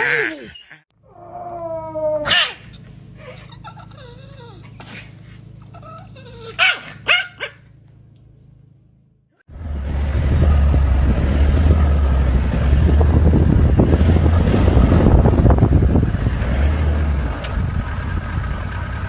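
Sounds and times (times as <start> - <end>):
dog whining and whimpering: 0.0 - 6.9
dog barking: 2.2 - 2.7, 6.5 - 7.6.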